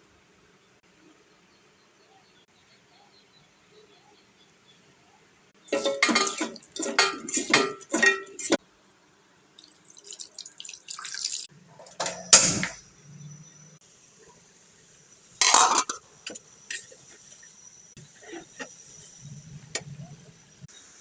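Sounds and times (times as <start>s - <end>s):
dishes clattering: 5.7s - 8.6s, 15.4s - 16.0s
water splashing: 9.6s - 11.5s.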